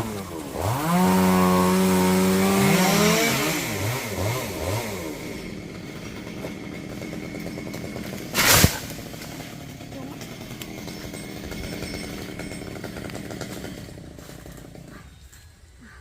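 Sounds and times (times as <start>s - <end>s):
chainsaw revving: 0.0s - 15.1s
loud crack or thump: 8.3s - 8.9s.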